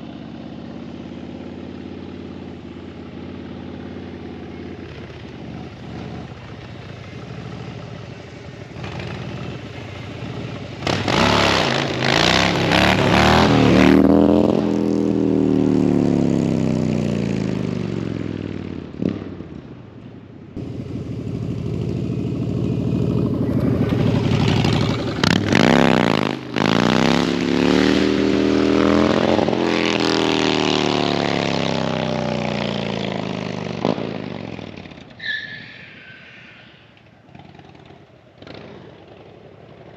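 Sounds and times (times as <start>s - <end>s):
motorcycle engine revving hard: 8.7s - 17.9s, 20.6s - 34.9s, 37.3s - 39.3s
spinning tyre hissing: 35.2s - 37.0s.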